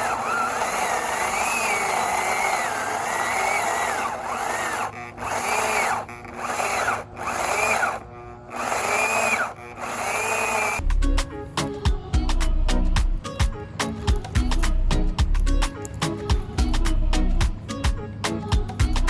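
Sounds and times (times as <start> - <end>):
electric chainsaw cutting: 0.0 - 10.8.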